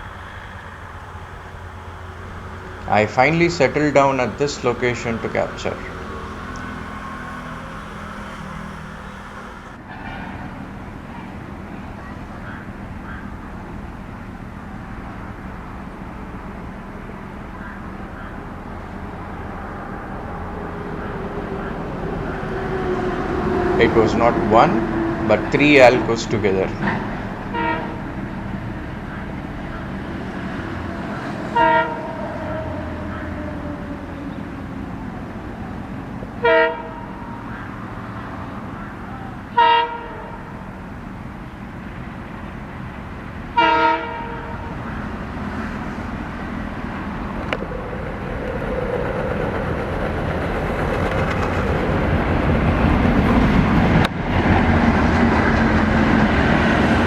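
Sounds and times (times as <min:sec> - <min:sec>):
locomotive horn blasts: 0:00.0 - 0:09.8, 0:27.4 - 0:28.4, 0:31.2 - 0:33.6, 0:36.4 - 0:38.5, 0:39.3 - 0:40.9, 0:43.5 - 0:44.9
locomotive engine: 0:00.0 - 0:57.0
train rolling: 0:00.0 - 0:57.0.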